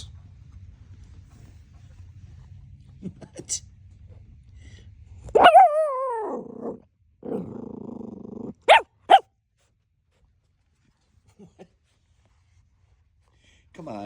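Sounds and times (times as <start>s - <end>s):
puppy barking: 5.4s - 7.5s, 8.6s - 9.2s
puppy crying: 5.4s - 7.6s, 8.5s - 9.2s
puppy growling: 5.4s - 9.2s.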